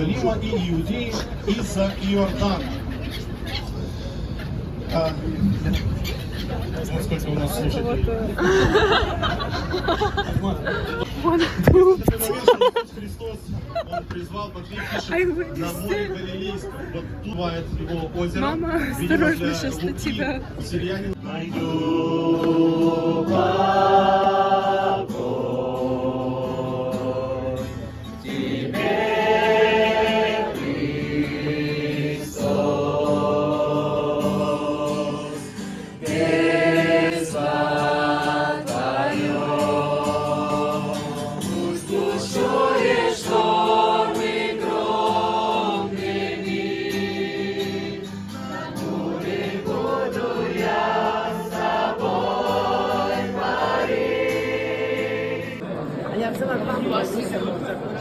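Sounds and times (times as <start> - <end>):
choir singing sacred piece: 21.3 - 55.8.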